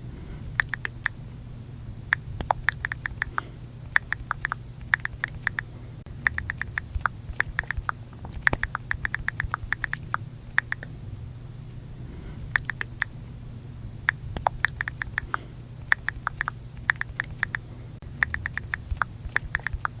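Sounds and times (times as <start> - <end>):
touchscreen keyboard clicks: 0.6 - 1.1, 2.4 - 3.4, 4.0 - 5.6, 6.2 - 10.9, 12.6 - 13.1, 14.4 - 17.6, 18.2 - 20.0.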